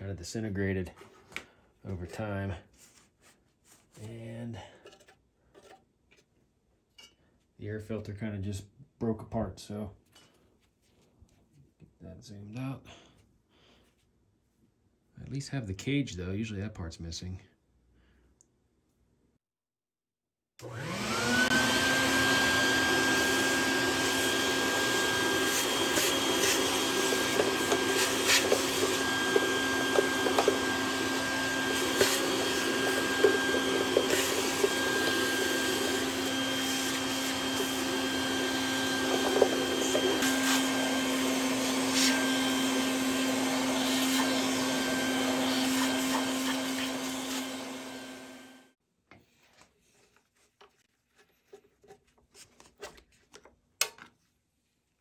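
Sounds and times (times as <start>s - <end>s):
vacuum cleaner running: 20.6s - 48.8s.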